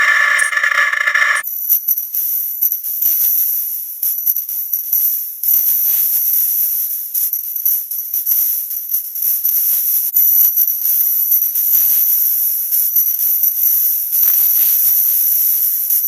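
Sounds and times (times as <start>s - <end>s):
rapid irregular crackles: 9.2s - 16.0s.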